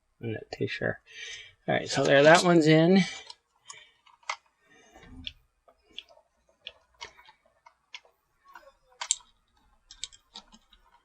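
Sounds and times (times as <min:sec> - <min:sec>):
plastic toy parts clicking: 0:03.2 - 0:04.5, 0:05.2 - 0:11.0.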